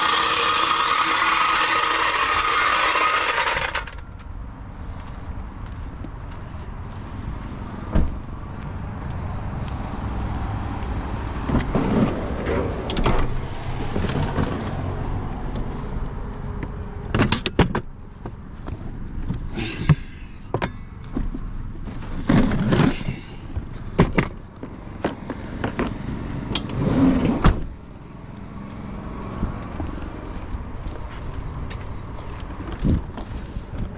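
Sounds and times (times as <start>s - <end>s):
low rumble: 7.0s - 17.2s.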